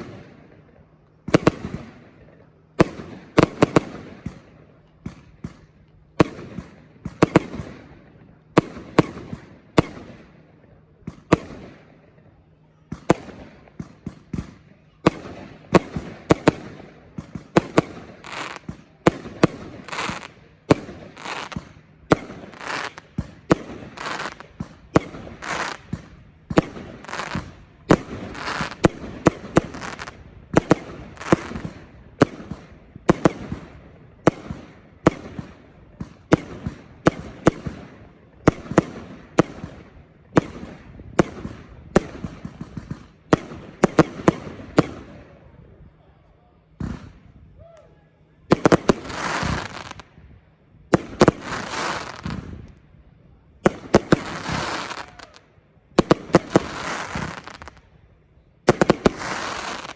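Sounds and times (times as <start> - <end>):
fireworks barrage shots and bangs: 0.0 - 12.1, 12.8 - 45.5, 46.8 - 47.3, 48.5 - 50.2, 50.9 - 52.9, 53.6 - 55.4, 56.0 - 58.0, 58.6 - 59.9
fireworks hiss: 18.2 - 31.7, 48.6 - 50.0, 51.0 - 52.6, 53.8 - 55.3, 56.2 - 57.8, 58.7 - 59.9.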